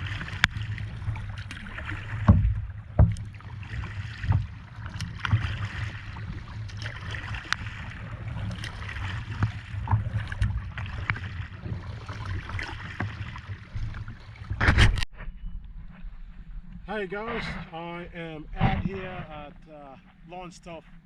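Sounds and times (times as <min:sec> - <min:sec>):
knocks and water slaps: 0:00.0 - 0:15.1
wind and water rumble: 0:00.0 - 0:21.0.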